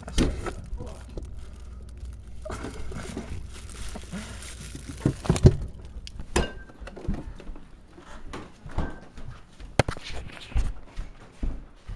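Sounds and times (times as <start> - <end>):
items knocking on fridge shelves: 4.8 - 7.4.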